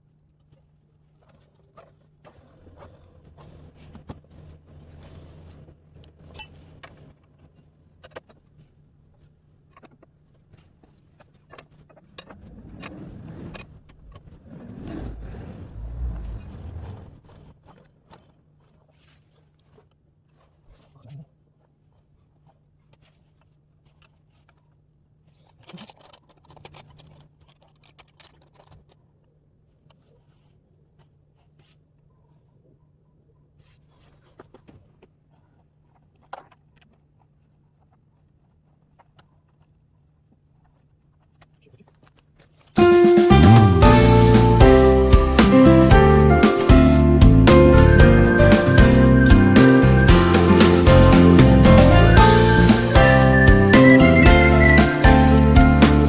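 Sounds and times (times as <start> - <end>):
low rumbling: 14.0 - 17.2, 43.3 - 56.0
objects clicking and scraping: 23.0 - 29.2.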